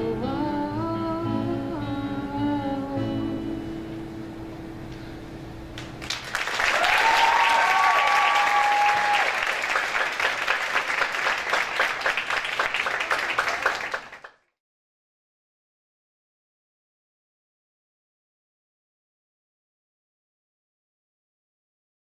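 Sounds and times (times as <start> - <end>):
audience applauding: 6.0 - 14.4
whoops from audience: 6.6 - 9.6.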